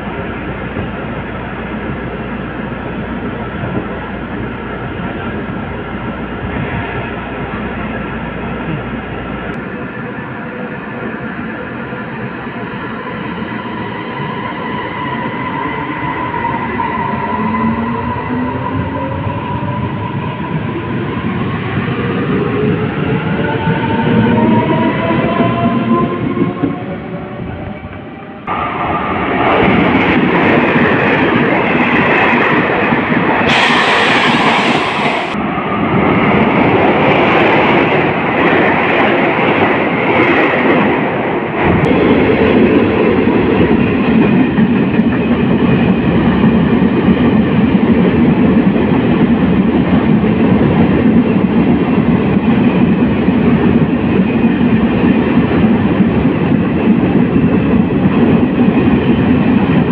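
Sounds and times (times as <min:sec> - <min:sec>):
train wheels rumbling: 0:00.0 - 0:59.9
short hiss: 0:33.5 - 0:35.4.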